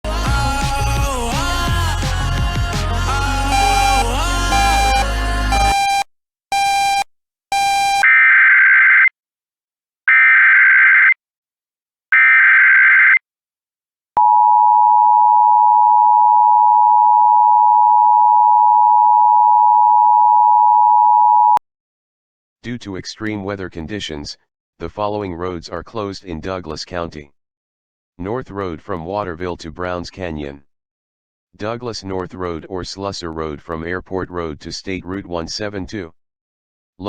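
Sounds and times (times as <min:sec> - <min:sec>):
buzzing data bursts: 0:03.5 - 0:06.0
short beeps: 0:03.5 - 0:08.1, 0:14.2 - 0:21.6
two-tone alert signal: 0:03.5 - 0:08.1.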